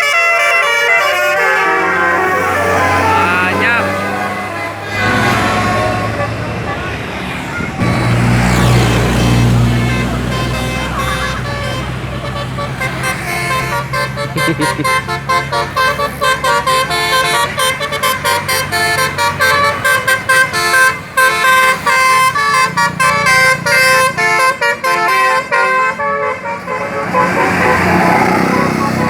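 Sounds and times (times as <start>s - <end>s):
musical bus horn: 0.0s - 29.0s
rushing noise: 1.8s - 9.7s.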